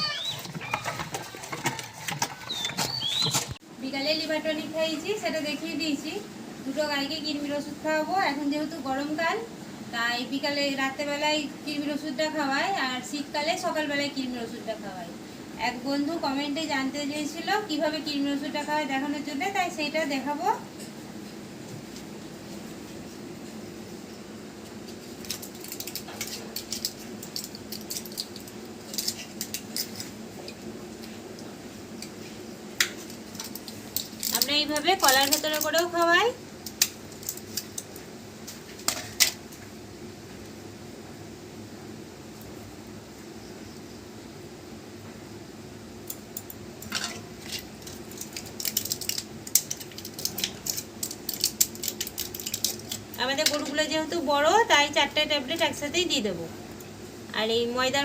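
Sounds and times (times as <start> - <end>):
small hard objects clinking: 25.2 - 30.1, 33.1 - 36.0, 46.8 - 53.8
hands handling small objects: 47.4 - 53.7.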